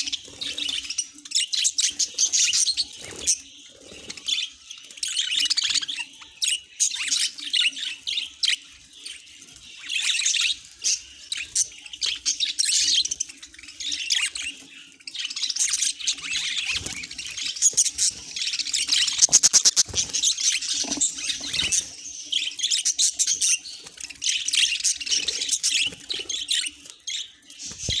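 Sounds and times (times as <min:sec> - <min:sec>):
budgerigars chattering: 0:09.7 - 0:28.0.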